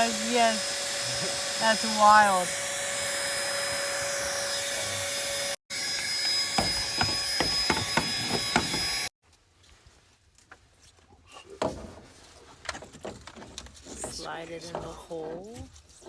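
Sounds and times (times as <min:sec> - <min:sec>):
power tool cutting metal floor: 0:00.0 - 0:09.1.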